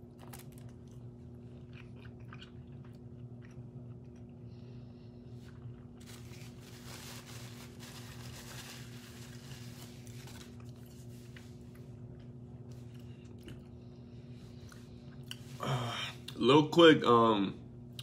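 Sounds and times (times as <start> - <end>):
person chewing food: 0.0 - 6.0, 10.4 - 15.6
steady low hum: 0.0 - 18.0
rustling: 6.0 - 11.6.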